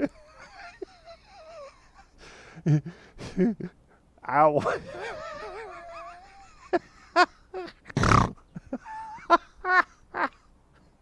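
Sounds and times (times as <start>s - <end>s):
person grunting and squealing: 4.6s - 6.2s.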